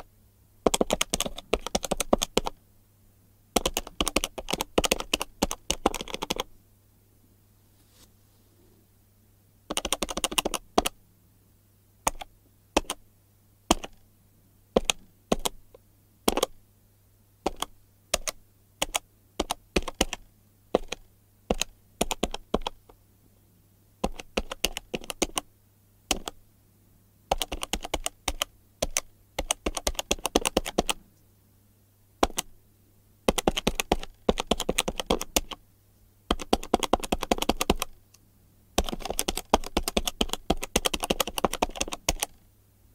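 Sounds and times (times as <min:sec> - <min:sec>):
calculator buttons clicking: 0:00.7 - 0:02.6, 0:03.6 - 0:06.5, 0:09.7 - 0:10.9, 0:27.3 - 0:31.0, 0:38.8 - 0:42.3.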